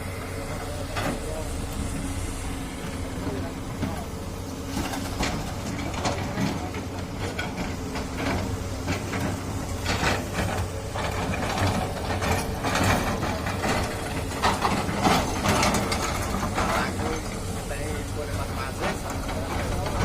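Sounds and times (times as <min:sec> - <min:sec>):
excavator diesel engine running: 0:00.0 - 0:20.0
metallic clanking and rattling: 0:04.7 - 0:20.0.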